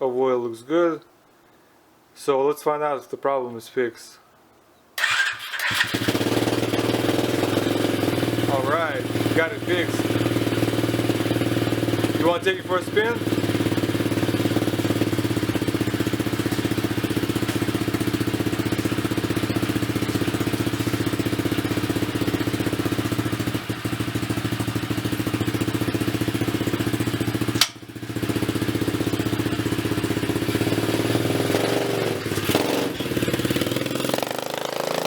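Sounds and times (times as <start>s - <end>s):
small motorbike engine running: 5.0s - 35.0s
sharp click: 27.6s - 27.8s.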